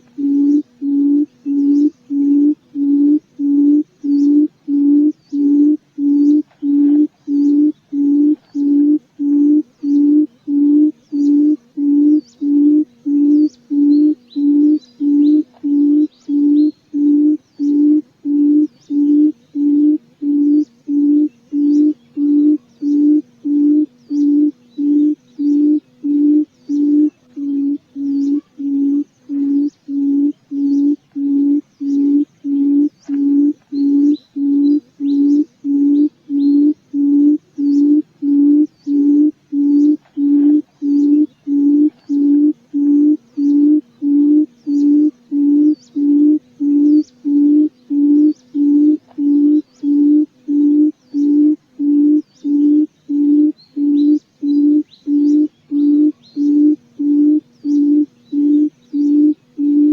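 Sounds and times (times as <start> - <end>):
faint bird chirps: 0.0 - 59.9
quail hooting call: 0.0 - 59.9.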